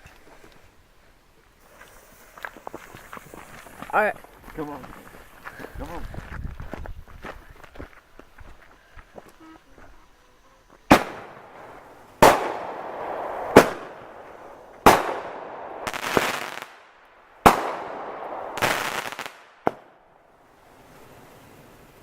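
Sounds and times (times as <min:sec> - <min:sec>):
rapid firework crackling: 0:10.9 - 0:19.9
fireworks bangs: 0:10.9 - 0:20.0.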